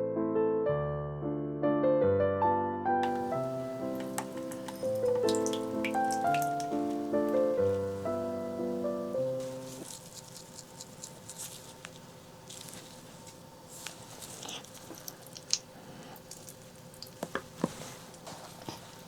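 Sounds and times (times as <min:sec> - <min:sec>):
wet squishing and smacking eating: 0:03.0 - 0:07.9, 0:09.4 - 0:19.0.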